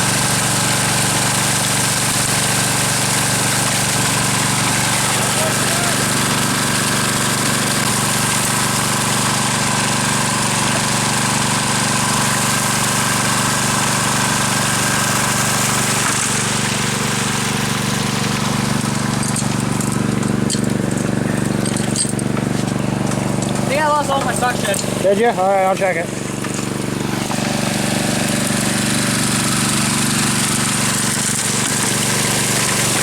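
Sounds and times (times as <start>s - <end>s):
engine and water pump running: 0.0s - 33.0s.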